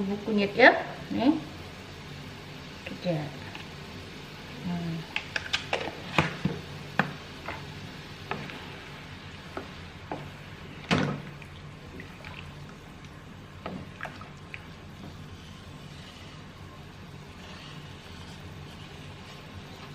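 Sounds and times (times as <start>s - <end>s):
food sizzling: 0.2s - 19.8s
spatula scraping a pan: 15.0s - 19.9s.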